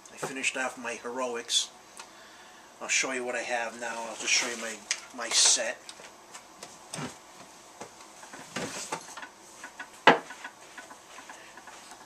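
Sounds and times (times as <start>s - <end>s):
objects being handled: 4.1s - 12.0s.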